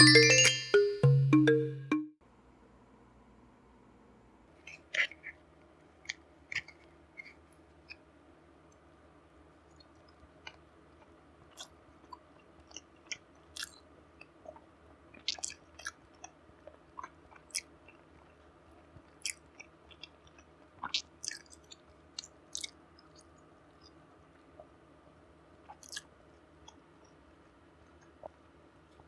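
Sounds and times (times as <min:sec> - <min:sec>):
faint hum: 0:00.0 - 0:29.0
chewing food: 0:04.7 - 0:08.0, 0:09.6 - 0:28.5
wet mouth clicks and smacks: 0:20.0 - 0:24.0, 0:25.7 - 0:26.8.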